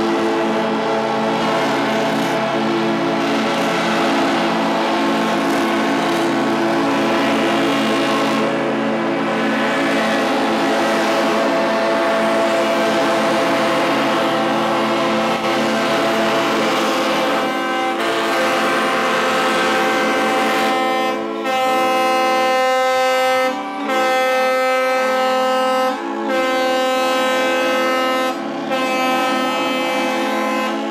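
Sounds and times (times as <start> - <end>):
boat horns blowing: 0.0 - 30.9.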